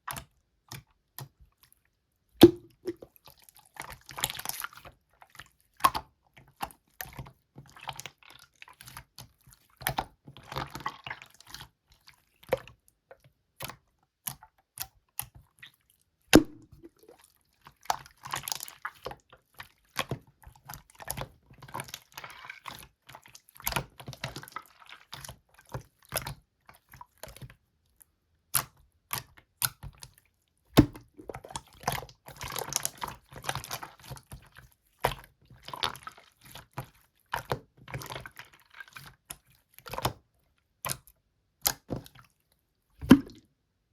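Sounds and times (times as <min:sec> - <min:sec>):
slime squishing and squelching: 0:00.1 - 0:12.8, 0:13.6 - 0:43.4.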